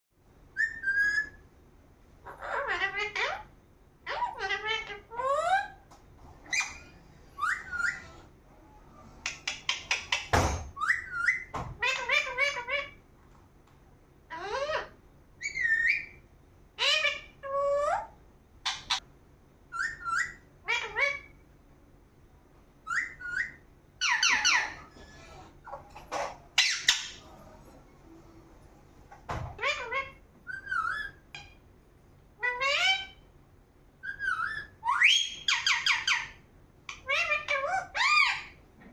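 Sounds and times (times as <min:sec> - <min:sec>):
parrot whistles and squawks: 0:00.5 - 0:01.5, 0:02.2 - 0:13.0, 0:14.3 - 0:16.2, 0:16.8 - 0:19.1, 0:19.7 - 0:21.4, 0:22.8 - 0:27.4, 0:29.4 - 0:31.6, 0:32.4 - 0:33.3, 0:34.0 - 0:38.6.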